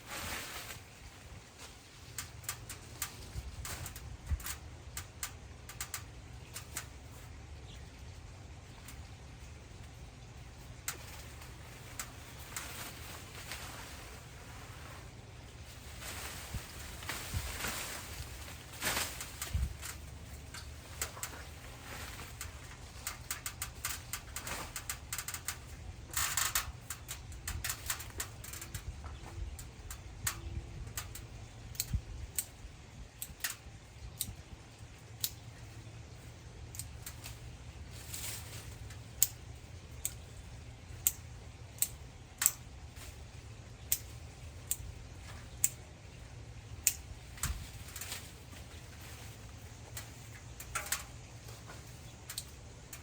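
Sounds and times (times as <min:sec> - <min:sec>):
rustling: 0:00.0 - 0:07.4, 0:08.8 - 0:30.4, 0:36.2 - 0:40.2, 0:42.4 - 0:53.0.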